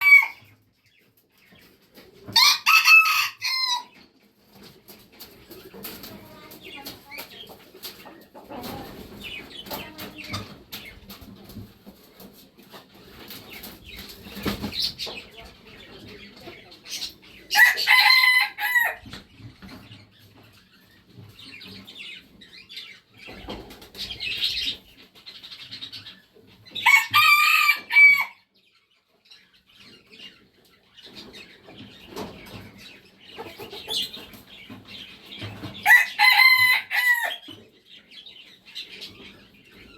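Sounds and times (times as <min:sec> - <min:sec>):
rooster crowing: 0:02.4 - 0:03.9, 0:26.8 - 0:28.4, 0:35.8 - 0:37.4
rooster clucking: 0:05.6 - 0:10.8, 0:33.3 - 0:34.4, 0:35.5 - 0:37.4.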